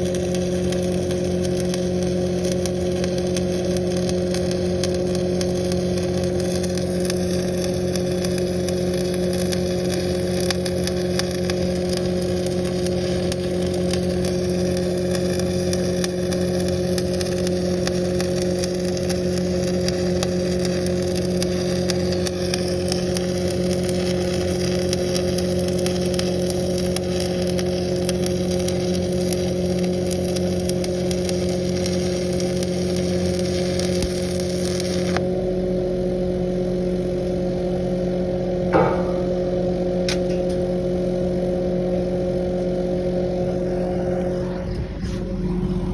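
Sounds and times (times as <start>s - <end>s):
welding arc crackling hiss: 0.0s - 35.2s
diesel engine running: 9.8s - 45.9s.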